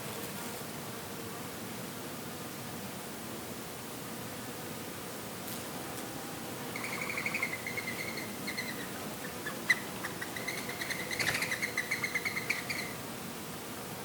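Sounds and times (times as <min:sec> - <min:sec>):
high chirping of small animal: 0:06.8 - 0:13.0.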